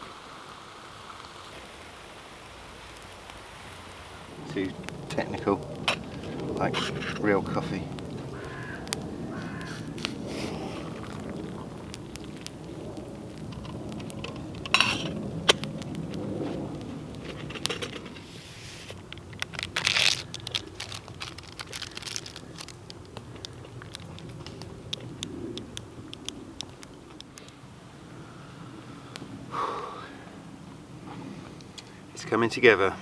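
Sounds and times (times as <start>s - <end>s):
campfire crackling and popping: 0.0s - 33.0s
rustling or scraping noises: 4.4s - 7.8s, 9.4s - 11.4s, 13.4s - 23.1s.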